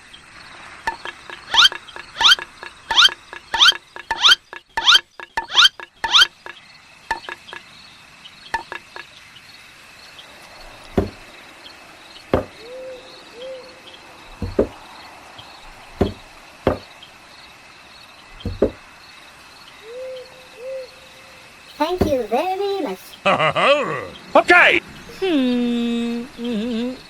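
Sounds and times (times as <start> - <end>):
dull knocks: 0.9 - 7.6, 8.6 - 9.1, 10.8 - 11.3, 12.3 - 12.6, 14.3 - 14.8, 15.7 - 16.9, 18.3 - 18.8
high-pitched chirping: 0.9 - 7.6, 8.6 - 9.1.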